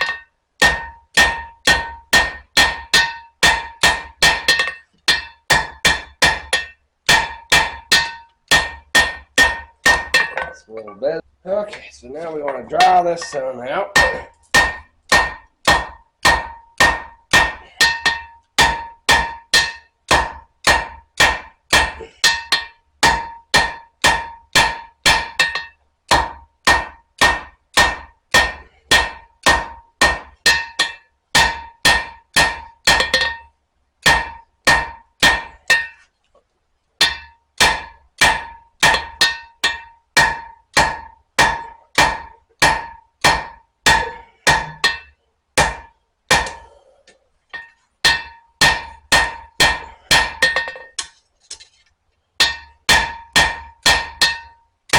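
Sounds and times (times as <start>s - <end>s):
hammer striking steel on anvil: 0.0s - 11.0s, 12.4s - 36.1s, 37.0s - 46.8s, 47.5s - 51.2s, 52.4s - 54.9s.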